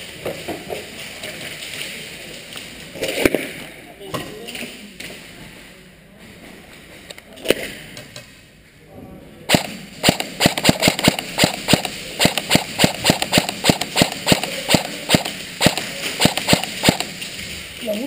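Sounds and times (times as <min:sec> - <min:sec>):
airsoft gun shots: 0:09.5 - 0:17.2.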